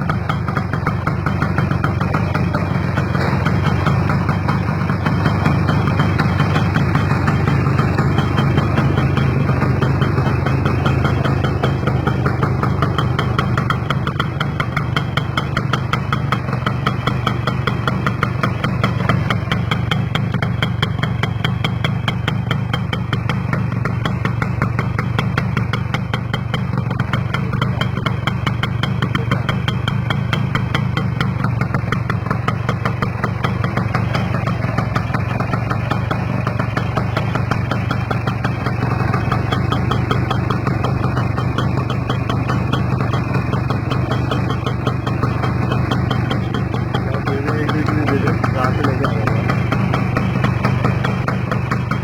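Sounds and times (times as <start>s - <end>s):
motorcycle engine idling: 0.0s - 52.0s.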